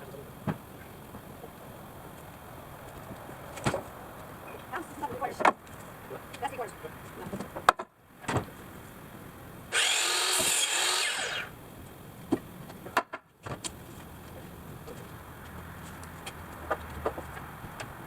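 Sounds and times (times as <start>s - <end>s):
power tool running: 9.7s - 11.6s.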